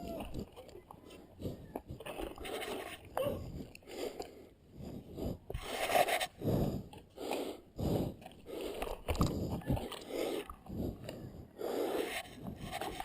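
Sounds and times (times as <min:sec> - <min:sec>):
heavy rapid breathing: 0:00.0 - 0:13.0.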